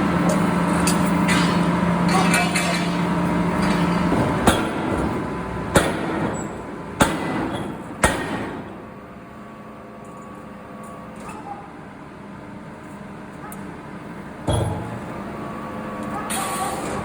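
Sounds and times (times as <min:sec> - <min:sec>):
machinery hum: 0:00.0 - 0:17.0.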